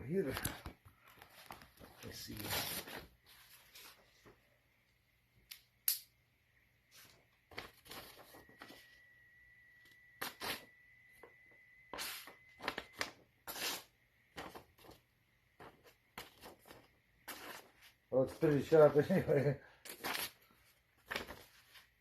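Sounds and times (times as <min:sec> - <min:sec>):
knife slicing paper: 0:11.9 - 0:14.9, 0:15.6 - 0:18.0, 0:19.9 - 0:21.9.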